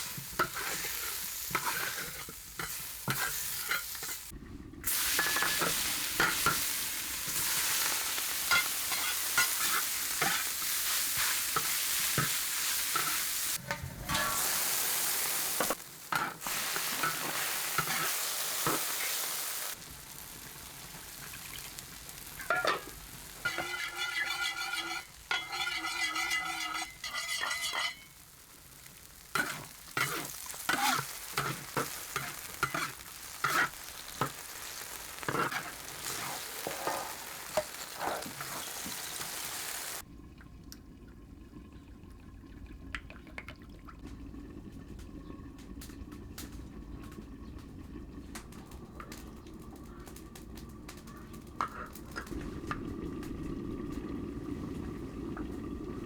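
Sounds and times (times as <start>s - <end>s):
spatula scraping pan: 0.0s - 4.3s, 7.3s - 14.4s, 15.6s - 19.1s, 22.4s - 28.2s, 29.3s - 39.4s
food sizzling in hot oil: 0.0s - 40.1s.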